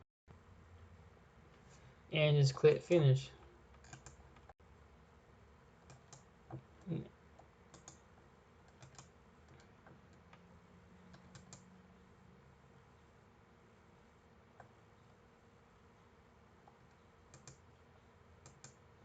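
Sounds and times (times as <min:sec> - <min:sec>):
mouse and keyboard clicking: 0:03.8 - 0:04.5, 0:07.7 - 0:08.0, 0:08.7 - 0:09.7, 0:11.1 - 0:11.7, 0:16.8 - 0:17.6.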